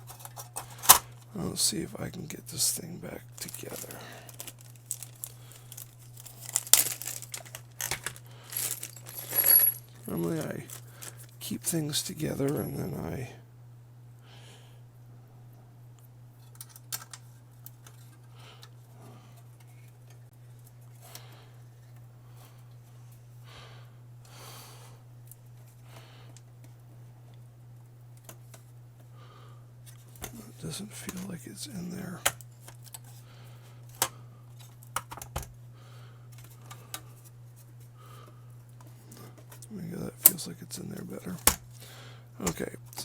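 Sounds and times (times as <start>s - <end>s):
steady low hum: 0.0s - 16.6s, 17.4s - 34.9s
console parts clicking and knocking: 35.0s - 35.5s.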